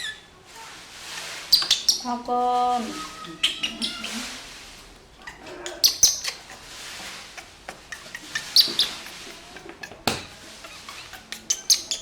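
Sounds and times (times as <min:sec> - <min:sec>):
baby monkey squeaking: 0:00.0 - 0:00.2, 0:01.1 - 0:02.1, 0:02.9 - 0:04.3, 0:05.2 - 0:12.0.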